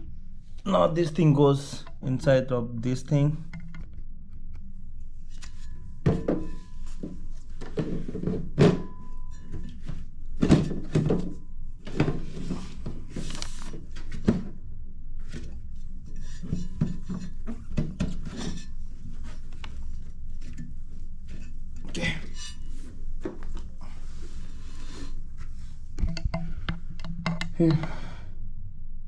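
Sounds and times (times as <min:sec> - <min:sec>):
hard parts knocking and clicking: 0:03.4 - 0:04.0, 0:26.0 - 0:27.9.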